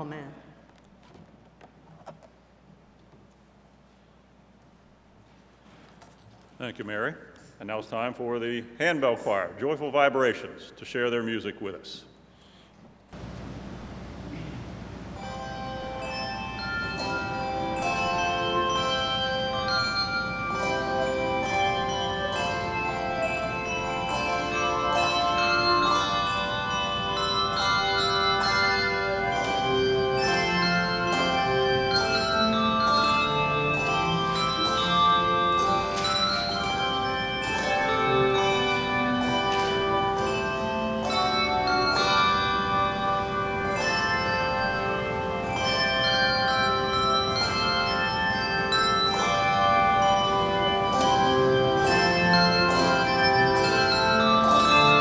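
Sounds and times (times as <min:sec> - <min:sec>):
handbell choir playing: 0:15.0 - 0:55.0.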